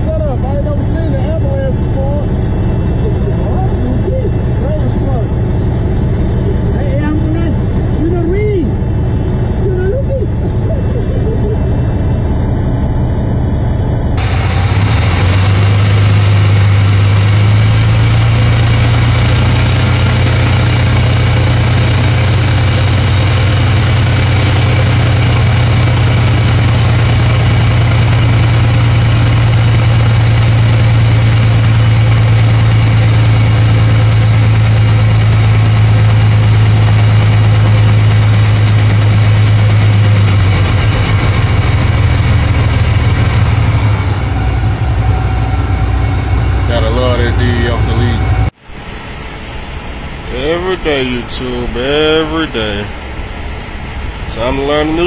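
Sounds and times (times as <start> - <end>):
truck diesel engine running: 0.0 - 48.6
faint high whine: 14.2 - 55.0.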